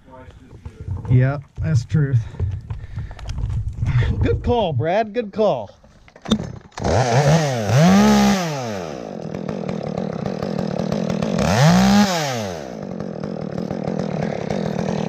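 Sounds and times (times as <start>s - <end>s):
chainsaw revving: 6.4s - 15.0s.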